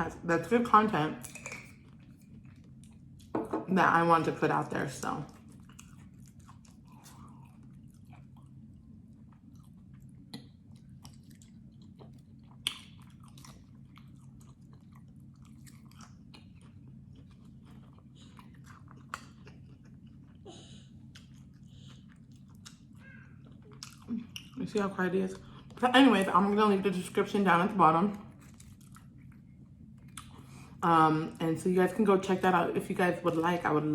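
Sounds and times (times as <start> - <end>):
faint low hum: 0.0 - 33.9
person chewing food: 1.2 - 3.5, 5.3 - 24.6, 28.3 - 30.8.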